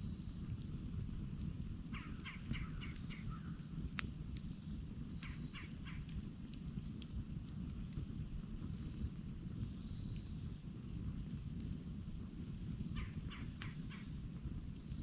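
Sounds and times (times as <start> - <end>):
campfire crackling and popping: 0.0 - 15.0
steady low rumble: 0.0 - 15.0.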